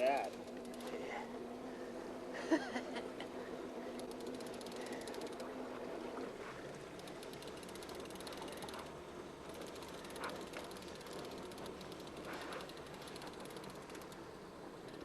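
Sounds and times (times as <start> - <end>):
fishing reel ratchet clicking: 0.0 - 1.1, 3.9 - 5.5, 6.9 - 15.0
steady low hum: 0.0 - 15.0.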